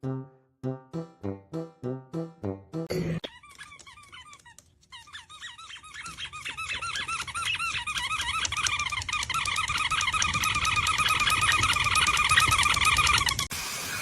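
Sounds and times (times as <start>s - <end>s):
small animals squeaking: 3.3s - 13.5s.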